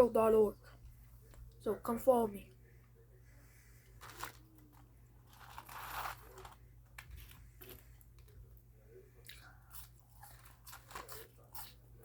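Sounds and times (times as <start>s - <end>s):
eating crunching and crinkling: 3.9s - 8.6s, 9.2s - 12.0s.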